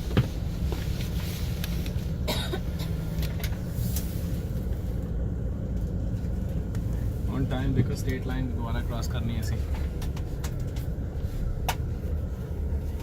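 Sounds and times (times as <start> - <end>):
bus engine and road rumble: 0.0 - 13.0
person coughing: 2.2 - 3.0.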